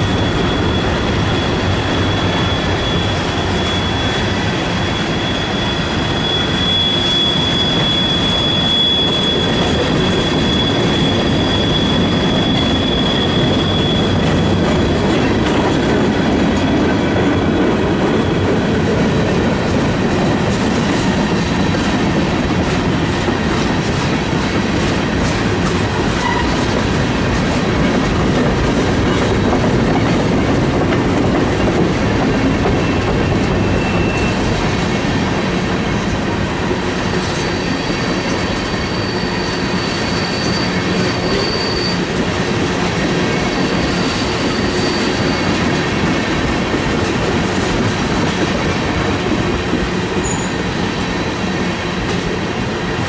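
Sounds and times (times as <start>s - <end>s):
faint high wheel squeals: 0.0s - 21.7s, 32.3s - 36.4s, 37.0s - 47.3s, 49.9s - 51.6s
train wheels rumbling on rail: 0.0s - 53.0s.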